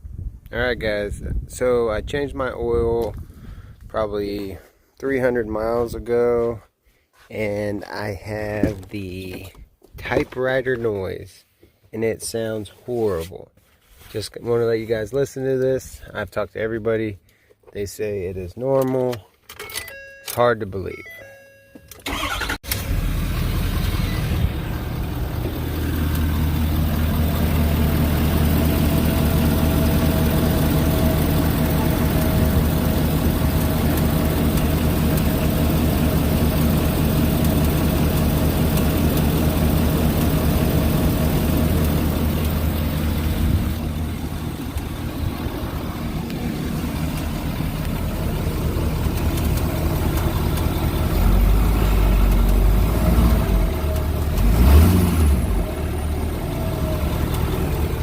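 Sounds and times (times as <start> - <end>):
diesel engine starting and idling: 22.0 - 58.0.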